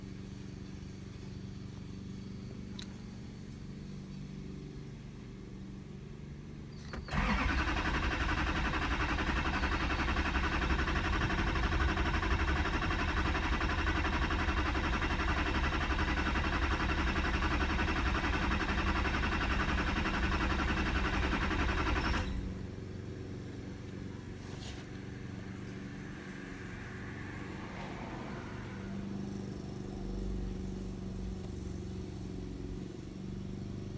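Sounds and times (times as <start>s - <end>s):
engine starter cranking: 6.8s - 22.6s.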